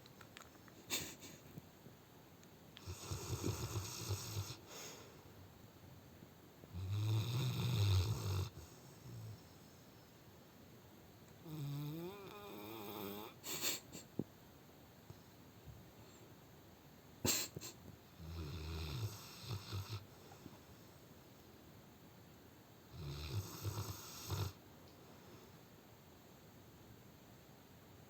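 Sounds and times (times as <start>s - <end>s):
dog snoring: 2.8s - 4.7s, 6.7s - 9.6s, 11.4s - 13.4s, 18.2s - 20.1s, 22.9s - 24.6s.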